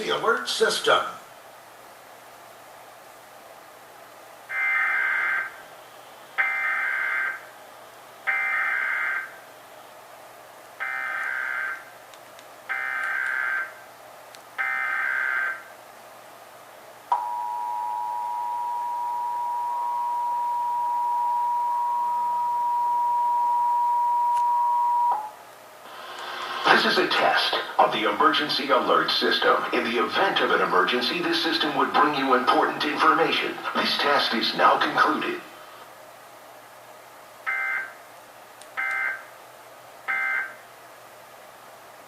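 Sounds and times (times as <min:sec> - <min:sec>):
two-tone attention signal: 0:17.1 - 0:25.4.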